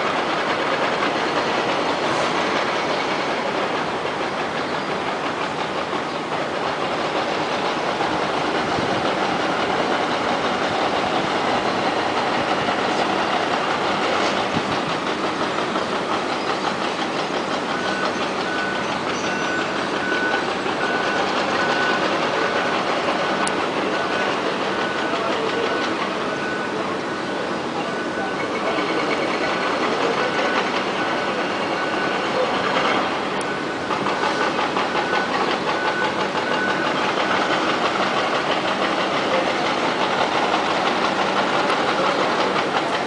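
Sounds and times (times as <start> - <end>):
loud mechanical rumble: 0.0 - 43.0.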